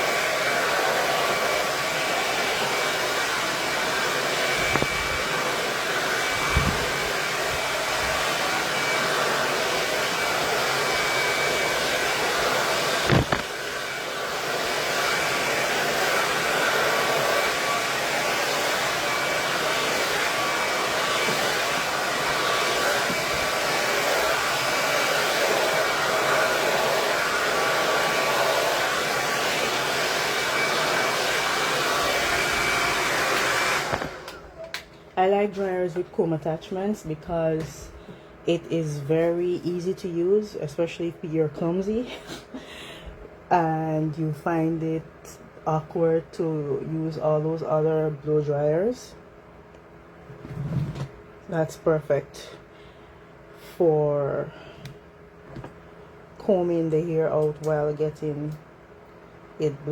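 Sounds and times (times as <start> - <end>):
hair dryer running: 0.0 - 36.0, 54.7 - 59.9.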